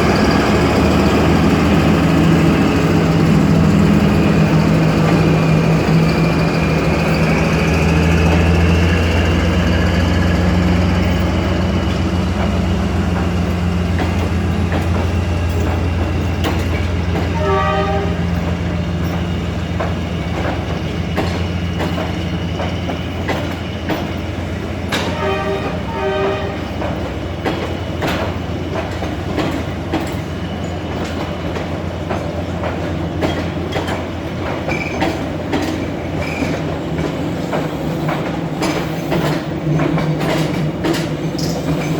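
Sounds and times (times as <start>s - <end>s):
locomotive engine running: 0.0s - 41.9s
wheels clicking over rail joints: 1.5s - 41.9s
train horn: 17.1s - 18.5s, 24.9s - 26.9s.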